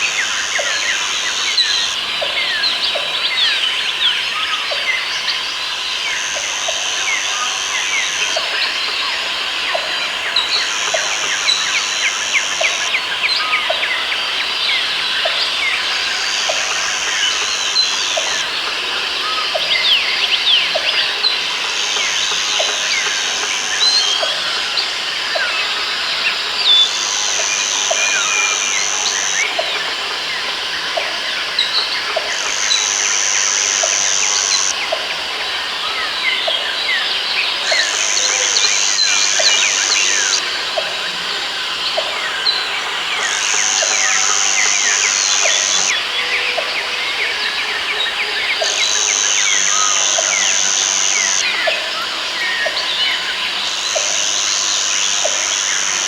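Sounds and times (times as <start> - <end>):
high steady buzz: 0.0 - 35.2, 37.3 - 46.1, 48.5 - 56.0
birds chirping: 31.7 - 35.0, 37.2 - 40.4, 42.3 - 46.0, 48.4 - 51.5.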